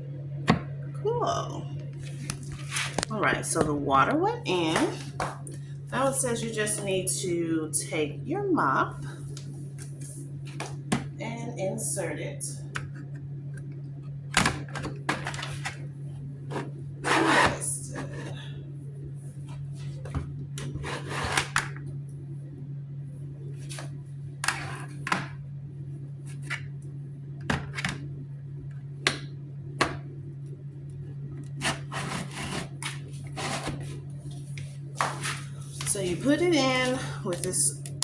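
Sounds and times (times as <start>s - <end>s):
steady low hum: 0.0s - 38.0s
mop head scraping and rubbing: 16.5s - 18.4s.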